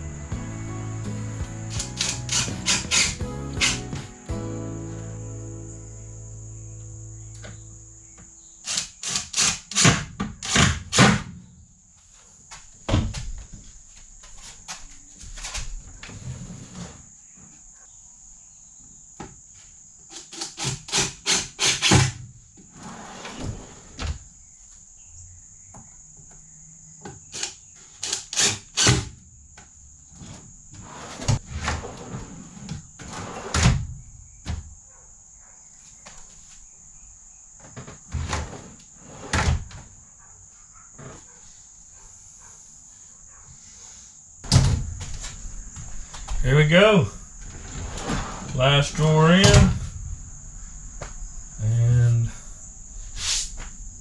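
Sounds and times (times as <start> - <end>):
faint high whine: 4.3 - 8.7.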